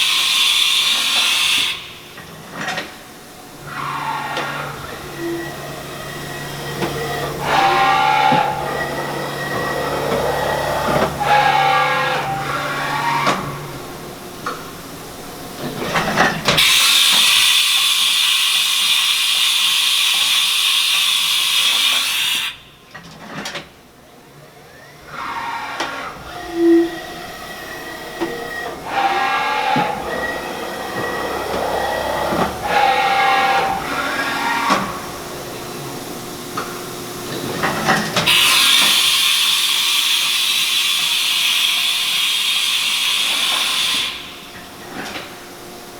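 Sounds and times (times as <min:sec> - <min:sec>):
machine drives whining: 0:00.0 - 0:17.5, 0:24.2 - 0:39.2.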